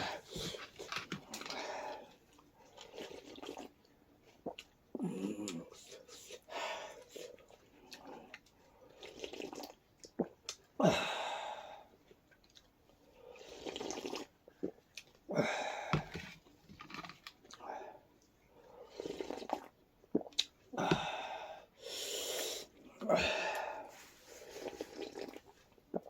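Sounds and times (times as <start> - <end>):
person slurping soup: 2.7 - 3.8, 4.5 - 10.4, 13.3 - 14.8, 18.8 - 20.5, 21.9 - 26.0.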